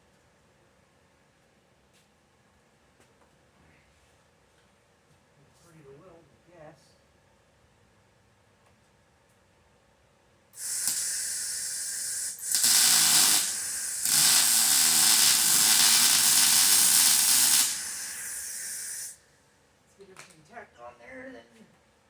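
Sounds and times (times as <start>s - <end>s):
arc welding hiss: 10.6s - 19.2s.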